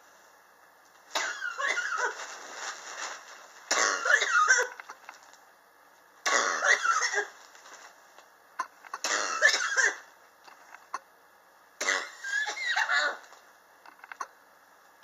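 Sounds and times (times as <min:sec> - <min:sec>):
person coughing: 0:01.2 - 0:02.2, 0:03.7 - 0:04.8, 0:06.3 - 0:07.4, 0:09.0 - 0:10.1.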